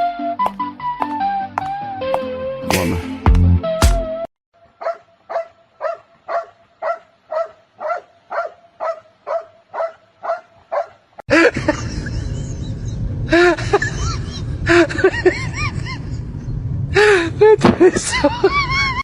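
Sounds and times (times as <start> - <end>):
dog barking: 4.8 - 11.0.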